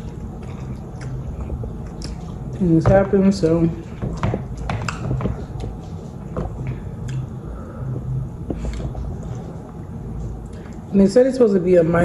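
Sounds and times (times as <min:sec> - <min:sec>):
chewing noodles: 0:00.0 - 0:02.6
wet mouth clicks and smacks: 0:00.1 - 0:01.2, 0:01.8 - 0:02.4, 0:04.1 - 0:05.8, 0:07.0 - 0:07.3.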